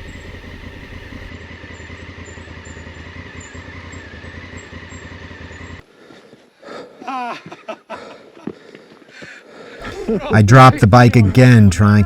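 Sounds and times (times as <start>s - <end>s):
motorcycle engine running: 0.0s - 5.8s.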